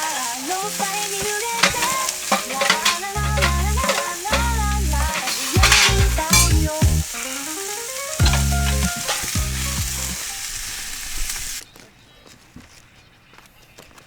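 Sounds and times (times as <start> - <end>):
crackling hiss: 0.0 - 11.7
lo-fi song with bass and keys: 3.2 - 7.6, 8.2 - 10.2.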